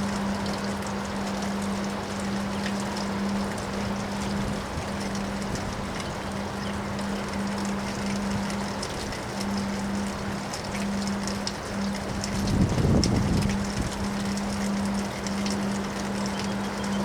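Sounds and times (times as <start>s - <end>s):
faint ticks: 6.9s - 17.0s.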